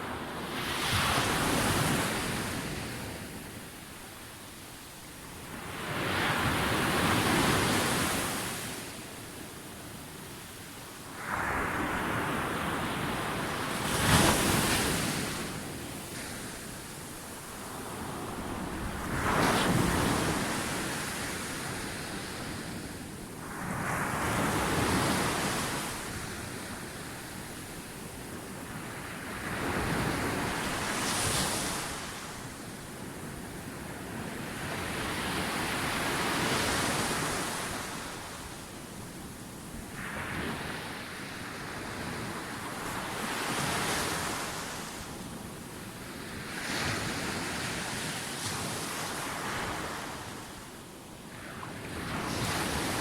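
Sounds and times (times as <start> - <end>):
ocean waves breaking on beach: 11.1 - 28.0, 39.8 - 53.0.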